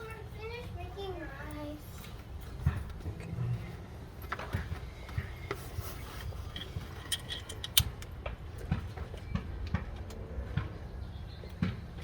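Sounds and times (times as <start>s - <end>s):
clicks and scraping of hand tools: 5.5s - 8.1s.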